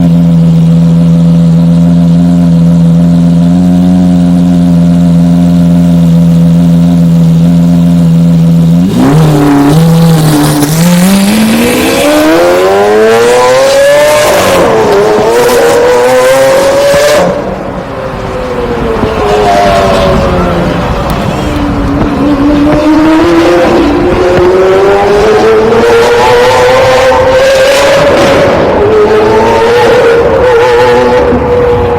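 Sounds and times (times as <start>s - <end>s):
car engine accelerating: 0.0s - 31.9s.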